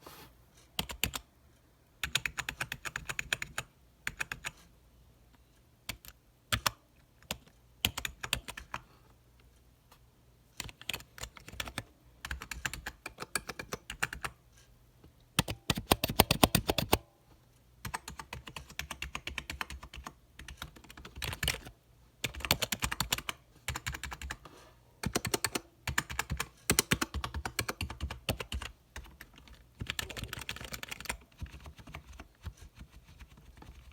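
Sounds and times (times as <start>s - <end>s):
keyboard typing clicks: 15.4s - 17.0s, 25.0s - 32.2s.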